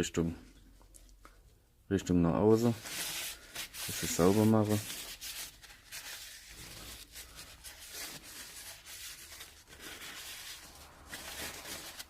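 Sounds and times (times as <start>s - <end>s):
faint rubbing and wiping: 2.4s - 12.0s.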